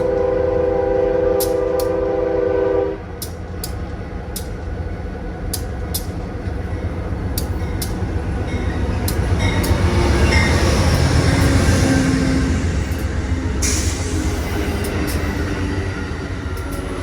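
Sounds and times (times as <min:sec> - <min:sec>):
train horn: 0:00.0 - 0:03.2
train passing rumble: 0:00.0 - 0:17.0
train wheels clicking: 0:01.2 - 0:02.2, 0:03.0 - 0:17.0.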